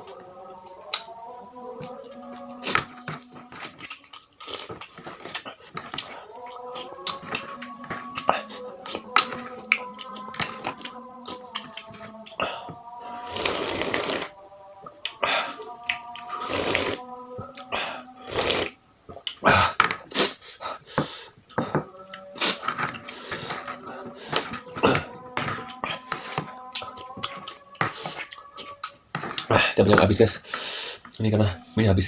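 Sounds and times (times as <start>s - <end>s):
quiet background music: 0.0s - 32.0s
slurping noodle soup: 1.9s - 14.4s, 15.0s - 29.8s
wet chewing clicks: 2.6s - 12.5s.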